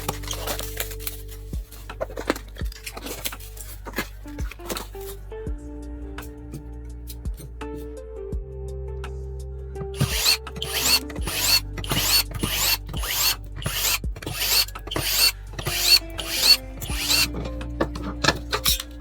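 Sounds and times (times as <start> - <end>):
soft background music: 0.0 - 19.0
rasping strokes with squeak: 10.0 - 19.0.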